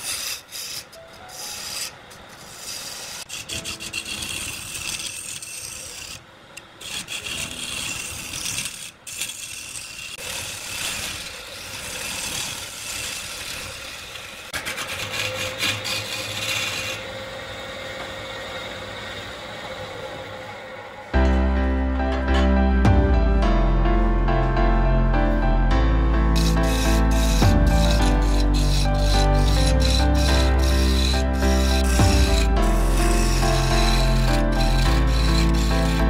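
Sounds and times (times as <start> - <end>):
wood being rasped: 0.0 - 19.3, 26.2 - 36.0
music: 21.2 - 36.0.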